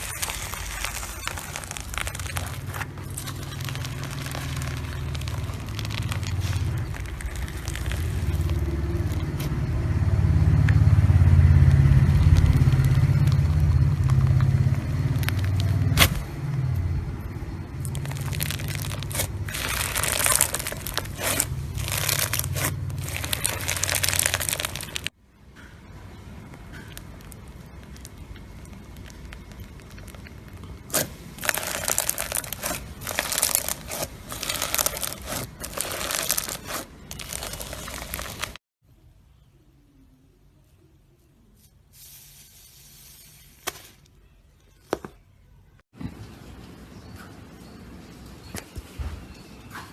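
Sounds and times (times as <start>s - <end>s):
slime crackling and popping: 0.0s - 9.6s, 10.7s - 16.9s, 17.6s - 25.2s, 26.5s - 38.6s
deep rumble: 0.0s - 25.1s.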